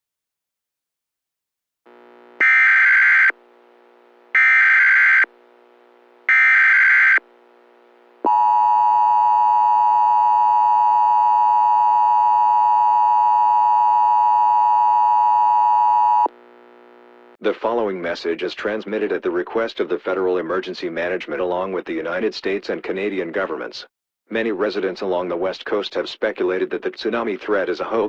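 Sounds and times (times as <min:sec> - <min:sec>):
faint hum: 0:01.9 - 0:02.5, 0:03.3 - 0:04.4, 0:05.2 - 0:06.4, 0:07.2 - 0:17.6.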